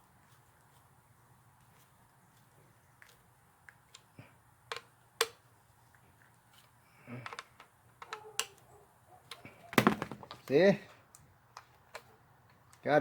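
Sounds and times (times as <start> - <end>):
plastic and metal parts clicking: 7.2 - 8.6.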